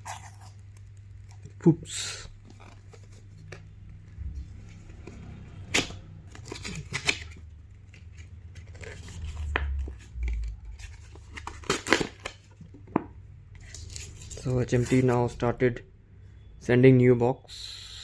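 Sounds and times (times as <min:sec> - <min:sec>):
packaging tearing and rustling: 0:00.0 - 0:01.5, 0:02.3 - 0:03.7, 0:04.4 - 0:12.6, 0:13.6 - 0:15.3
packaging sharp clicks and snips: 0:05.7 - 0:07.4.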